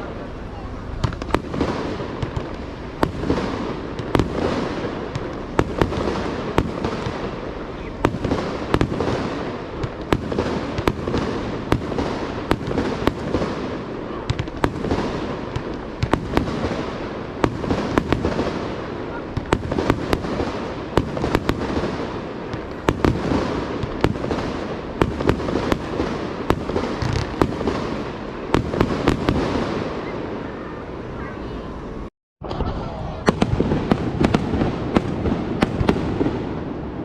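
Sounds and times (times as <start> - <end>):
echoing booms: 0.0 - 31.1, 32.0 - 37.0
fireworks bursting with sharp bangs: 0.0 - 37.0
fireworks rumble and crackle: 0.0 - 37.0.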